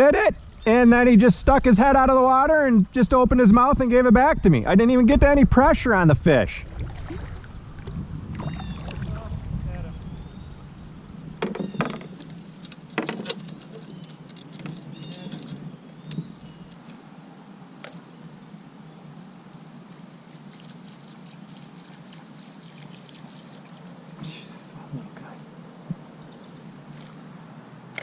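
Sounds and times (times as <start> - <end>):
light water patter: 6.6 - 15.6, 20.2 - 25.4
knocks against a kayak: 11.4 - 12.3, 13.0 - 13.4.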